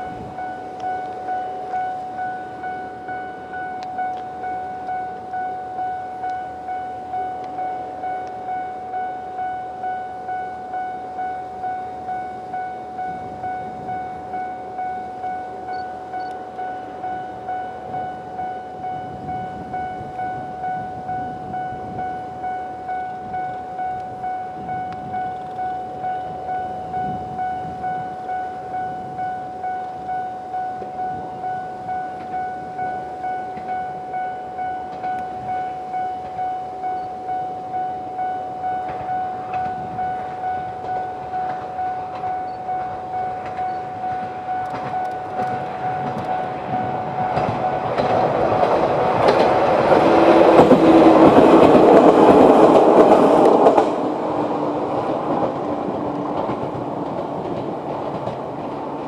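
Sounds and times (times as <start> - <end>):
level crossing warning bell: 0.0 - 59.0
train wheel clatter and rumble: 38.6 - 59.0.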